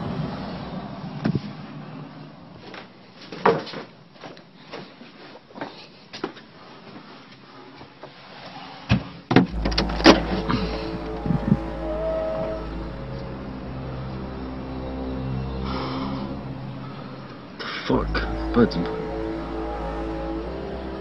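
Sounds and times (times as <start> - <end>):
eerie music drone: 9.5 - 21.0.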